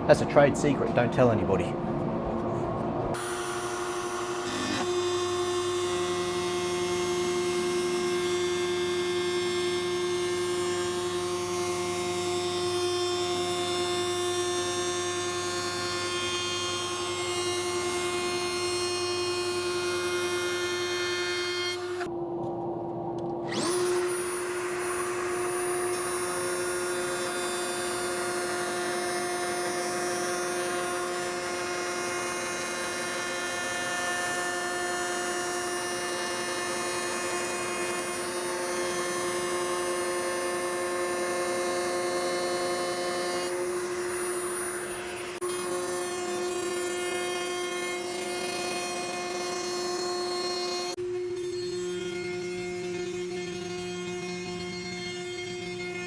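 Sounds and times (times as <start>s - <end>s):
drill press motor humming: 23.5s - 51.0s.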